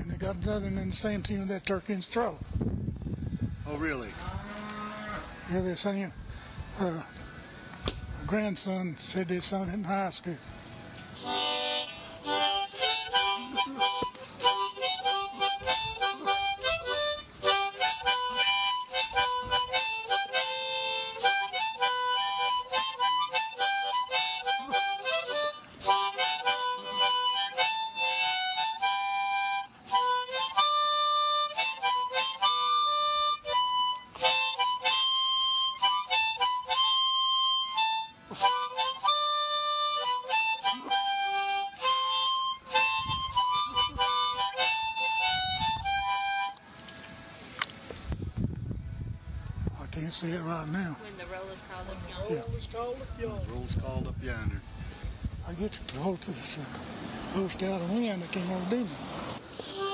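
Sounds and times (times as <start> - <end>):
harmonica playing: 11.1 - 46.9, 59.5 - 59.9.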